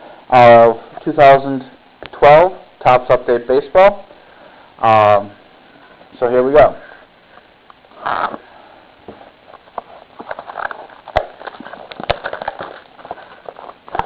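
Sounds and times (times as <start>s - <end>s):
cardboard box crinkling: 9.7s - 14.0s.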